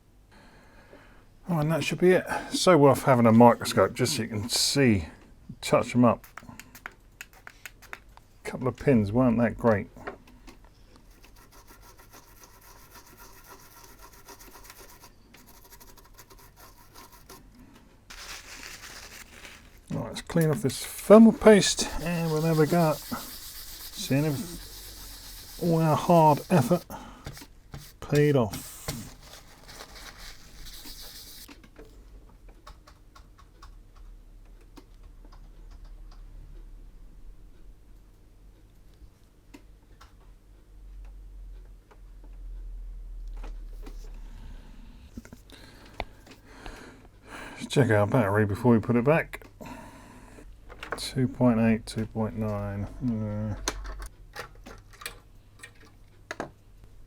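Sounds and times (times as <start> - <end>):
small tool scratching metal: 11.1 - 17.5, 18.1 - 31.5
brief scrubbing hiss: 21.5 - 31.5.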